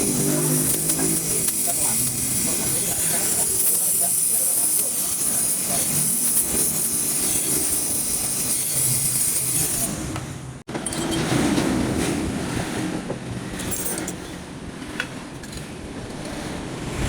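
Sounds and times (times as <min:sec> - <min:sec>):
welding torch flame hissing: 0:00.0 - 0:10.2.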